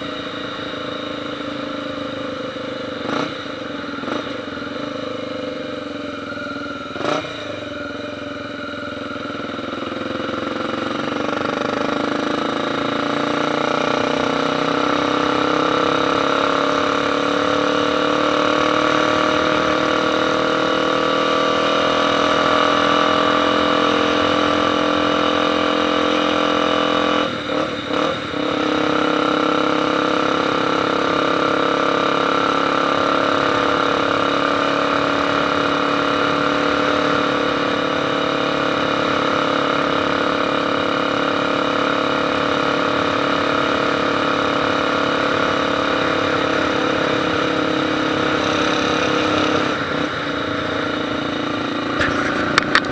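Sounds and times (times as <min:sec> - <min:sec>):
motorcycle engine running: 0:00.0 - 0:52.9.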